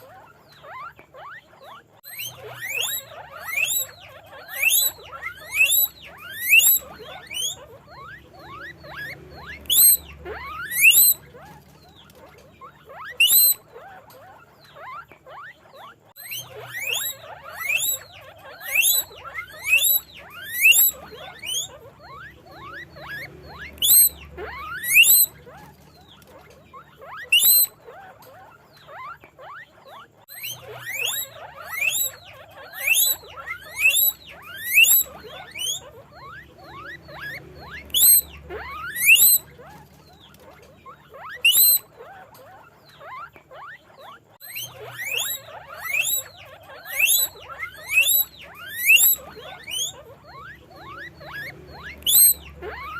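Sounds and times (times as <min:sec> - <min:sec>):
guinea pigs squeaking: 0:00.0 - 0:52.9.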